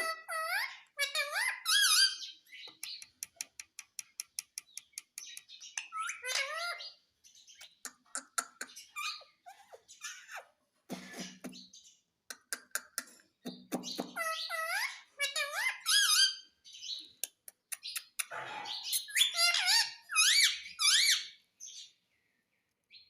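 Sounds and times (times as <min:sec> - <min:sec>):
parrot chirps and squeaks: 0:00.0 - 0:21.9
parrot clicking: 0:02.8 - 0:06.0, 0:12.3 - 0:13.1.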